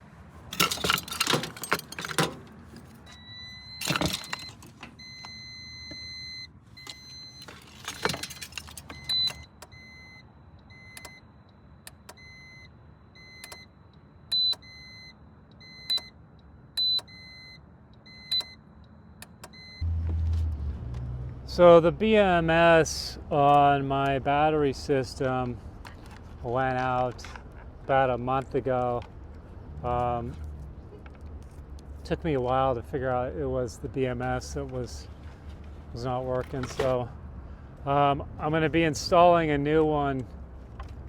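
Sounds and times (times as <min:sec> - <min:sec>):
metallic jangling and clicking: 0:00.5 - 0:03.1, 0:03.7 - 0:05.0, 0:06.8 - 0:09.6.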